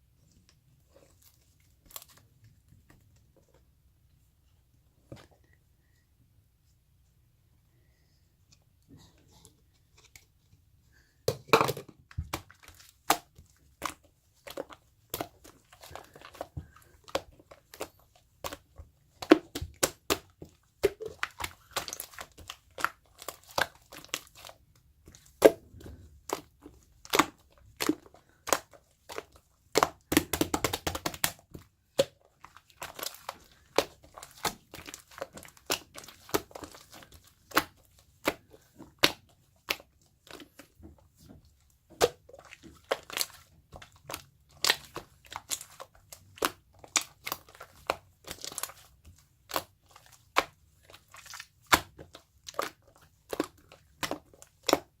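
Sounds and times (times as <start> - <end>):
slime clicking and popping: 25.2 - 40.5.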